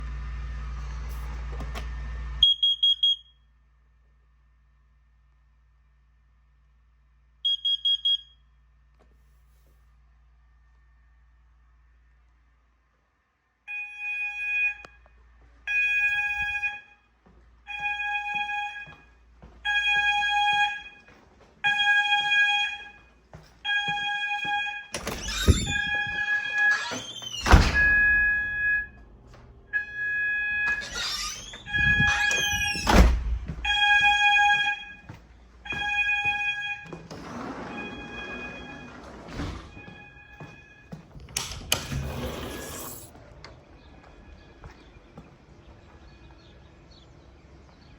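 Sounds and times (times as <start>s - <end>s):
fire alarm beeping: 2.4s - 3.4s, 7.4s - 8.5s, 13.7s - 15.0s, 15.7s - 17.0s, 17.7s - 42.0s.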